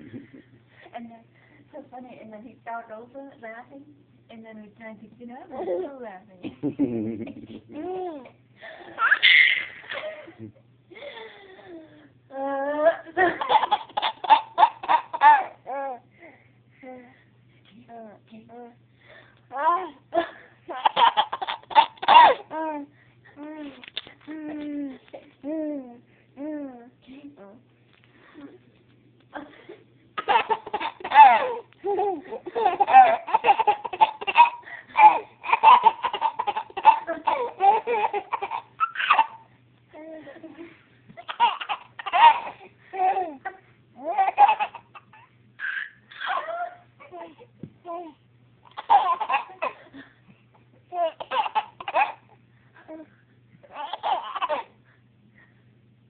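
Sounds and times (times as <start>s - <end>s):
baby laughing hard: 9.0s - 10.2s, 12.8s - 15.6s, 20.7s - 22.5s, 30.2s - 39.5s, 41.2s - 43.4s, 44.0s - 46.8s, 48.7s - 49.8s, 50.9s - 52.2s, 53.6s - 54.7s.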